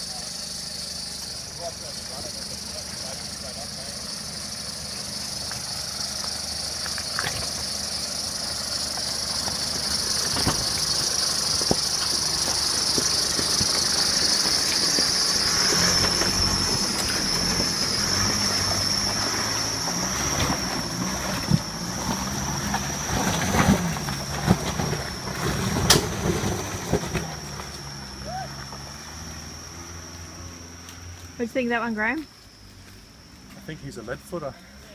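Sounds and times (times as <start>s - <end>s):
engine revving: 0.0s - 34.6s
insects buzzing: 0.0s - 34.9s
knocks and thumps: 10.2s - 15.1s.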